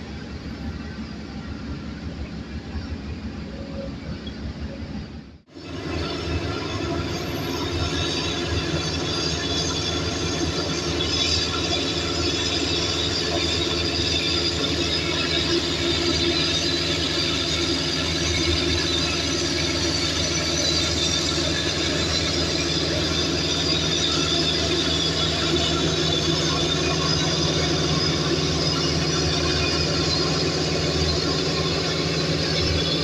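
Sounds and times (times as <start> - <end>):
crawler tracks squealing and clattering: 5.6 - 33.0.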